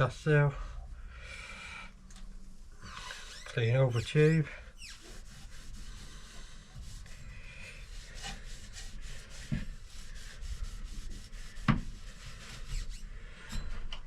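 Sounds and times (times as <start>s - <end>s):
rag rubbing on metal tube: 2.8s - 13.2s.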